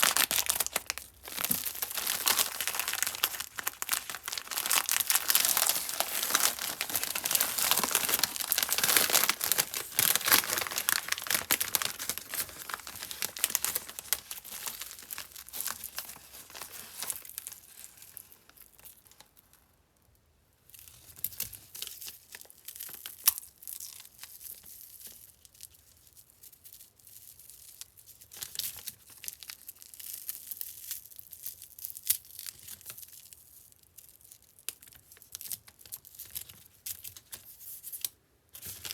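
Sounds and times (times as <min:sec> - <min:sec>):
candy wrappers crinkling: 0:00.0 - 0:19.3.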